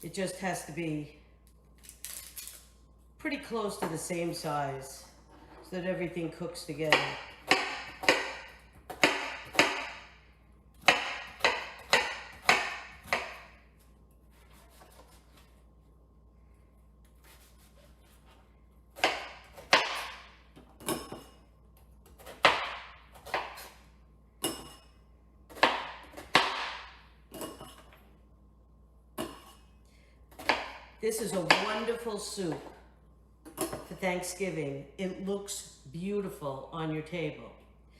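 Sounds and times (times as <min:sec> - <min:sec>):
knife chopping on cutting board: 0:06.9 - 0:10.1, 0:10.8 - 0:13.6, 0:19.0 - 0:21.3, 0:22.0 - 0:23.8, 0:25.5 - 0:27.6, 0:30.3 - 0:31.9.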